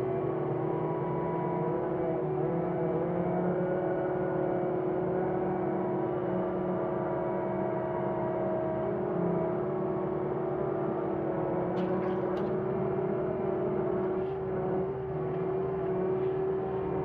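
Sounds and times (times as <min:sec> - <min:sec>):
loader engine hum: 0:05.8 - 0:17.0.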